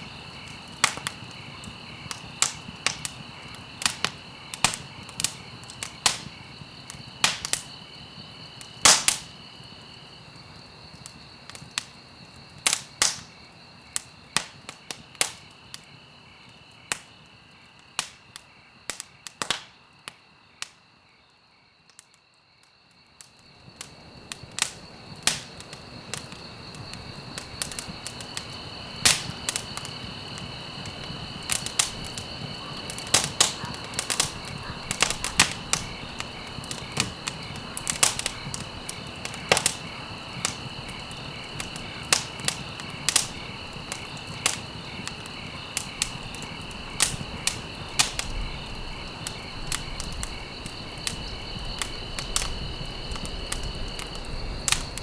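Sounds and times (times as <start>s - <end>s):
wood fire crackling and popping: 0.0s - 20.8s, 21.9s - 55.0s
fire hiss: 23.6s - 55.0s.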